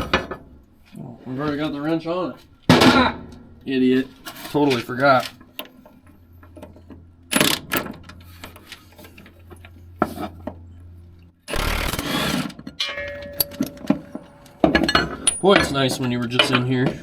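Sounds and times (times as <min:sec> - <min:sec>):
metal tools clinking: 0:12.8 - 0:17.0.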